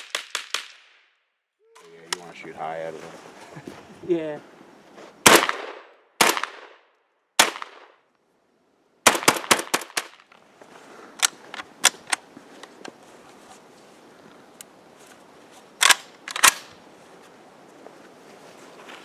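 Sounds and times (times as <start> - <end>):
rifle gunshots: 5.2 - 6.8, 7.4 - 8.0, 9.0 - 10.2.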